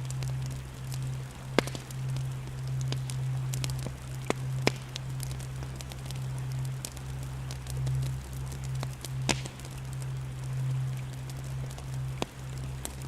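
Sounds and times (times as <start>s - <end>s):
burning wood popping: 0.0s - 13.0s
campfire crackling: 0.0s - 13.0s
low steady hum: 0.0s - 13.0s.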